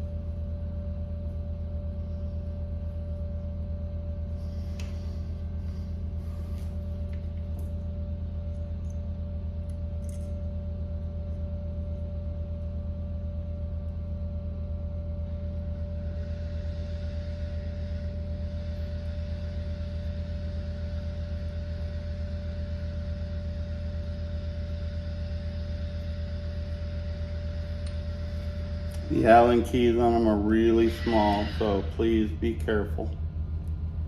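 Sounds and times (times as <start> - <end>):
constant high tone: 0.0 - 34.0
steady low hum: 0.0 - 34.0.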